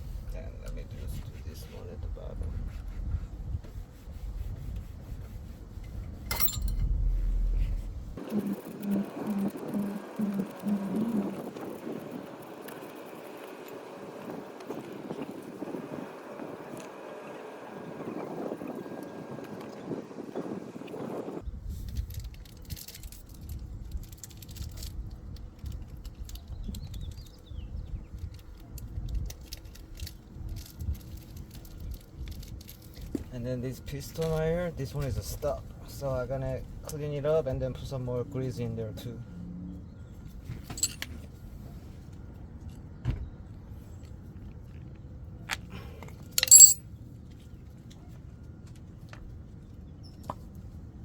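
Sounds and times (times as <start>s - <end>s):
steady low rumble: 0.0s - 11.8s
metal brake parts clicking and rattling: 6.3s - 7.1s, 40.7s - 41.0s, 46.4s - 46.8s.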